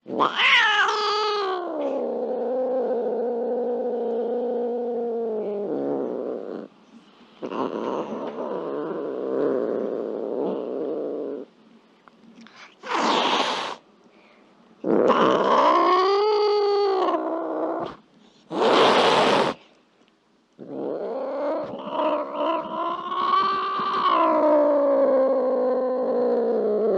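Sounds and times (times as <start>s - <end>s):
cat growling and yowling: 0.0s - 6.7s, 7.4s - 11.5s, 14.9s - 19.6s, 20.6s - 26.9s
cat hissing: 12.5s - 13.8s, 17.8s - 19.7s.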